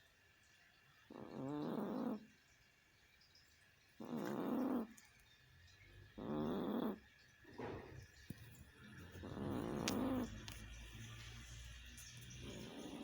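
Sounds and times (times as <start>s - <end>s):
cat snoring: 1.1s - 2.3s, 4.0s - 5.0s, 6.1s - 7.1s, 8.5s - 13.0s.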